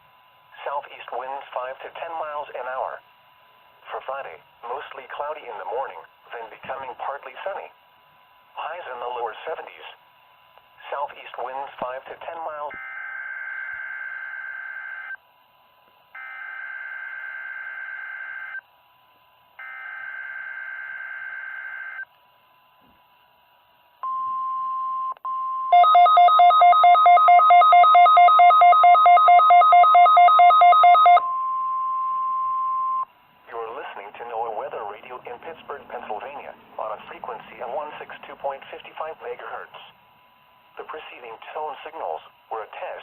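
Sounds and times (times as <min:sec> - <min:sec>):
steady warning alarm tone: 0:12.7 - 0:15.2, 0:16.1 - 0:18.6, 0:19.6 - 0:22.1, 0:24.0 - 0:33.1
pulsing electronic beep: 0:24.1 - 0:33.1.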